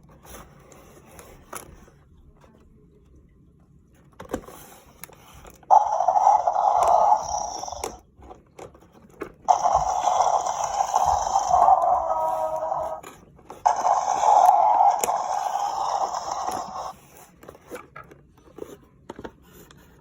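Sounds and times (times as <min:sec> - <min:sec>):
toy packaging being opened: 0:09.5 - 0:18.2.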